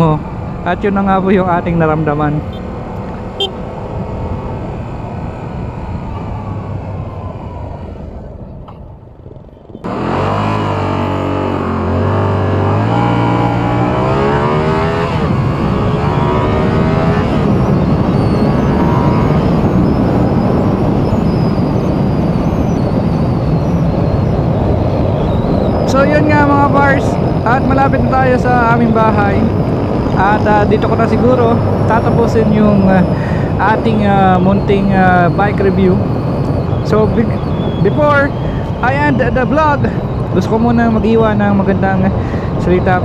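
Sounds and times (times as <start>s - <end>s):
wind noise: 0.0s - 43.0s
motorcycle accelerating through gears: 9.8s - 40.3s.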